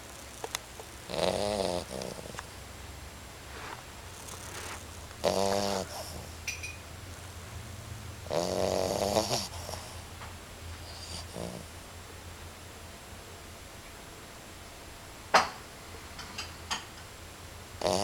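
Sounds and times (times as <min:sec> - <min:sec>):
puppy snoring: 0:00.2 - 0:02.7, 0:03.5 - 0:06.5, 0:08.2 - 0:10.2, 0:10.8 - 0:11.8, 0:17.8 - 0:18.0.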